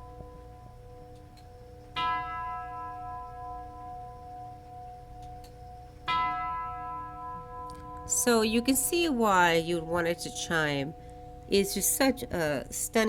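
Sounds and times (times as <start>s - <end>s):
tubular chime bell ringing: 5.7s - 13.0s.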